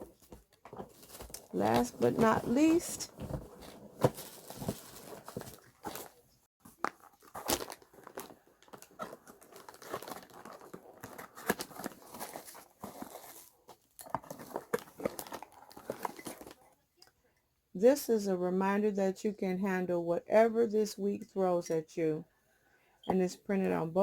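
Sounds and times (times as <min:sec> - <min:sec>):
paper wrapping crinkling and tearing: 0:06.8 - 0:16.6.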